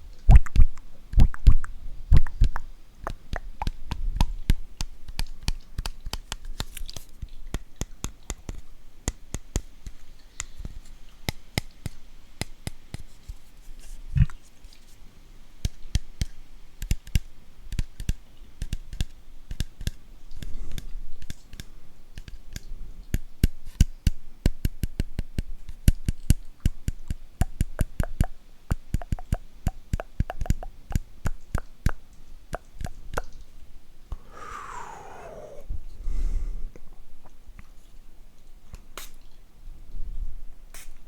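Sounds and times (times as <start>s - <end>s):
sharp irregular clicks and taps: 0.4s - 13.1s, 15.6s - 33.4s.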